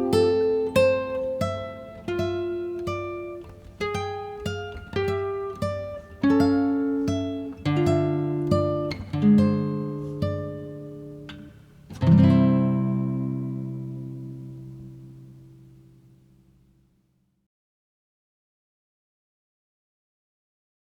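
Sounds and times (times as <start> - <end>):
acoustic guitar picking and strumming: 0.0 - 16.2.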